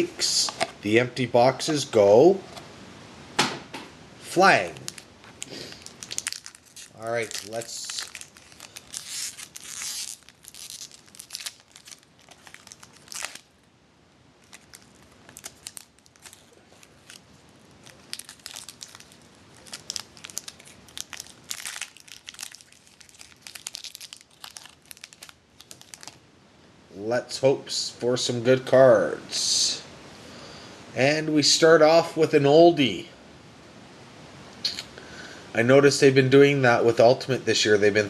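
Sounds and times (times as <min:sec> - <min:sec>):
wrapper tearing and crinkling: 0:04.7 - 0:13.6, 0:14.4 - 0:26.2.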